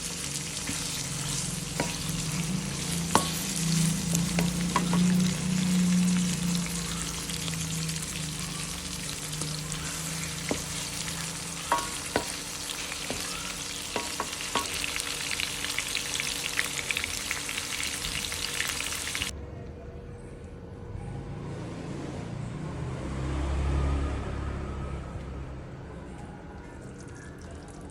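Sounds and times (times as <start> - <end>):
food sizzling in hot oil: 0.0 - 19.3.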